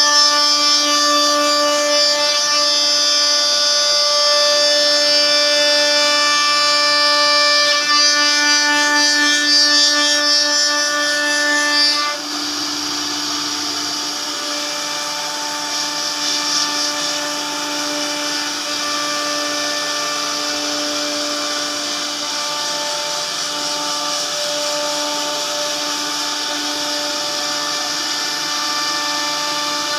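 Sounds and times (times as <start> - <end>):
router spindle high whine: 0.0 - 29.9.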